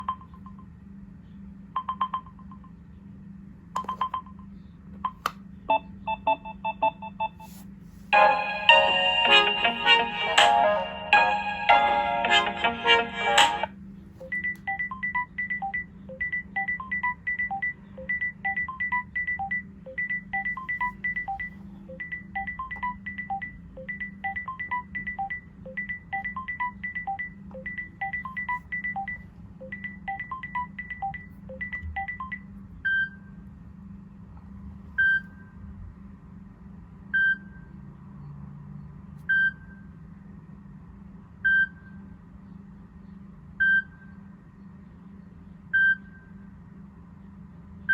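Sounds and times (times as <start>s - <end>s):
alarm clock beeping: 14.3s - 32.4s.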